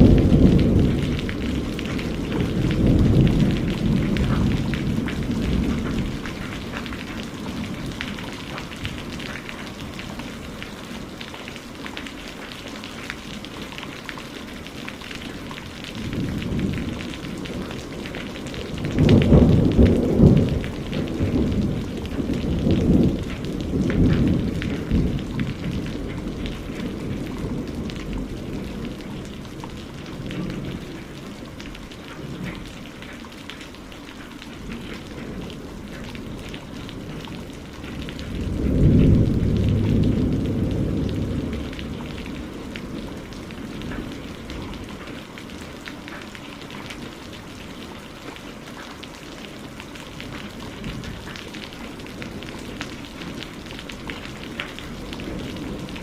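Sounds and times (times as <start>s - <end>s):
low rumble of thunder: 0.0s - 33.0s, 34.5s - 48.7s, 49.6s - 56.0s
steady rain: 0.0s - 56.0s.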